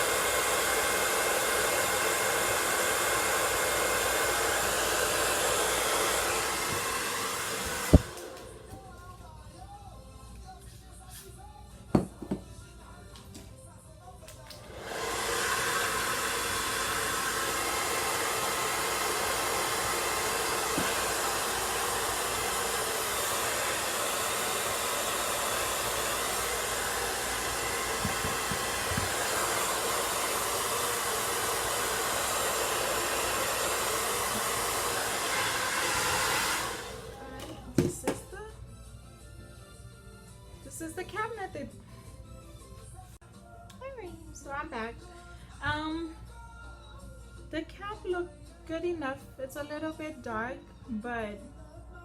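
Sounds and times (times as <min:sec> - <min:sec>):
blow dryer running: 0:00.0 - 0:09.0, 0:14.5 - 0:38.4.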